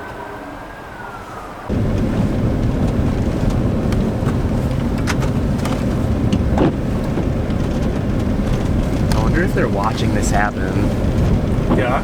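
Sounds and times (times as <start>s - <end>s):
distant siren wailing: 0.0s - 2.7s
vehicle rumbling: 0.0s - 12.0s.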